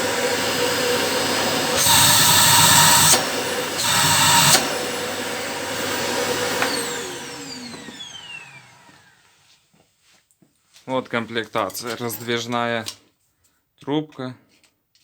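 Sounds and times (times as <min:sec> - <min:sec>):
vacuum cleaner motor: 0:00.0 - 0:09.6.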